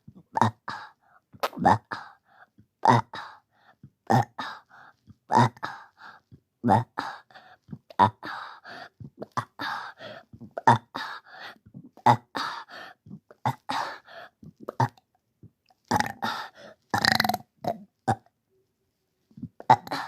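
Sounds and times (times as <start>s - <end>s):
person burping: 0.2s - 2.1s, 2.8s - 3.2s, 4.1s - 4.4s, 5.3s - 5.8s, 10.5s - 11.0s, 13.4s - 13.8s, 14.6s - 15.0s, 15.9s - 18.3s, 19.5s - 20.0s.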